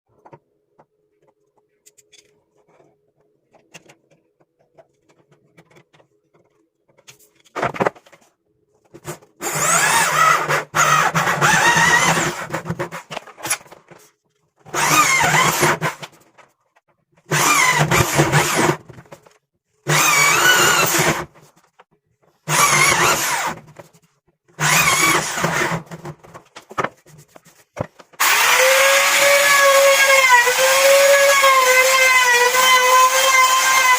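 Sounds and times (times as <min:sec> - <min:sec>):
power drill working wood: 0:09.4 - 0:12.9, 0:14.7 - 0:16.0, 0:17.3 - 0:18.8, 0:19.9 - 0:21.3, 0:22.5 - 0:23.6, 0:24.6 - 0:25.9, 0:28.2 - 0:33.9.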